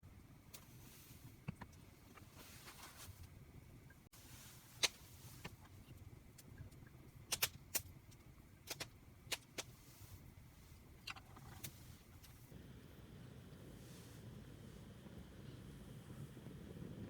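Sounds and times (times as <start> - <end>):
low steady murmur: 0.1 - 17.0.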